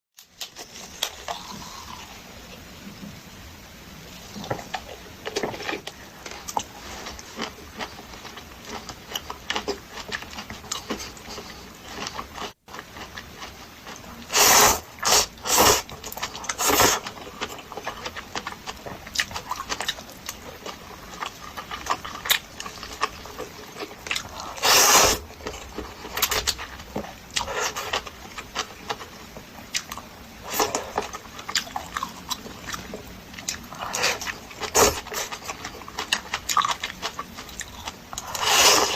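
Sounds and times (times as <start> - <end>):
wet chewing: 4.4 - 38.9
loud slurps: 14.3 - 15.9, 24.4 - 25.2, 38.3 - 38.9.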